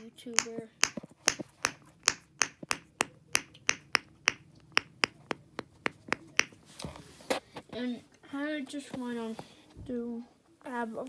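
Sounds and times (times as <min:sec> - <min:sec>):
plastic fidget toy popping: 0:00.0 - 0:06.6.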